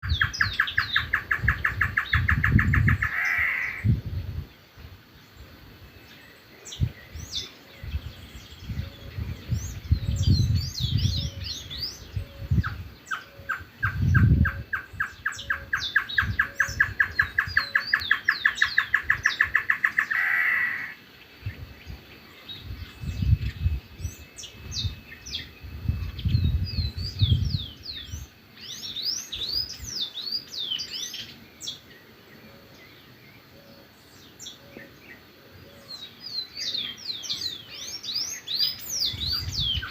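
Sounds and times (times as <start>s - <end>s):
birds chirping: 0.0s - 39.9s
microphone rumbles: 1.3s - 3.2s, 6.8s - 13.0s, 13.8s - 15.3s, 22.6s - 28.2s.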